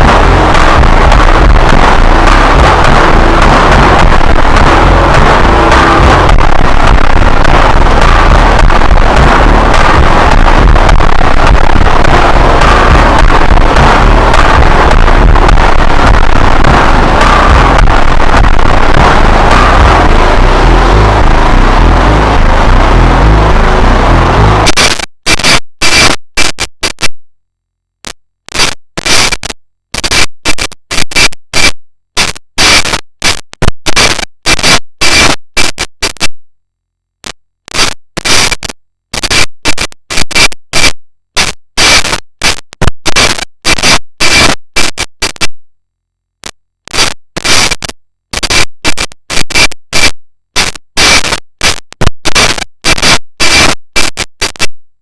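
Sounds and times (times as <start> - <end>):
distorted alarm static bursts: 0.0 - 26.2.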